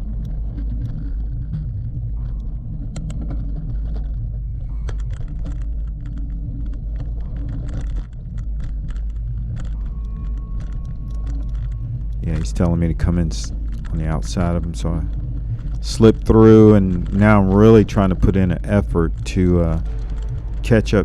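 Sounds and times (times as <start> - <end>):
tyres rumbling on dirt: 12.1 - 21.0.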